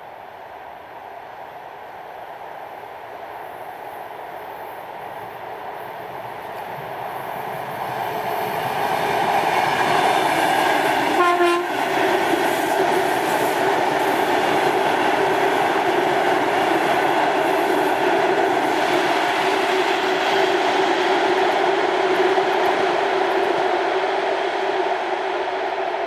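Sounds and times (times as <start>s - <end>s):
train passing: 0.2s - 26.0s
train horn blast: 11.1s - 11.9s.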